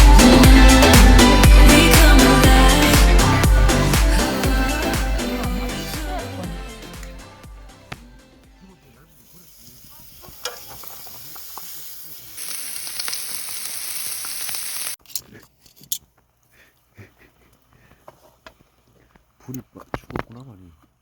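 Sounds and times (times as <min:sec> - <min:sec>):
food sizzling and frying: 0:09.2 - 0:15.0.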